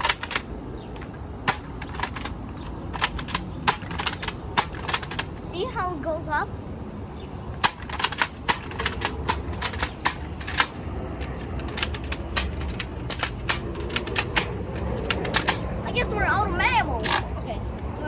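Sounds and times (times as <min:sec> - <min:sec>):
toy gun clicking: 0:01.4 - 0:05.4.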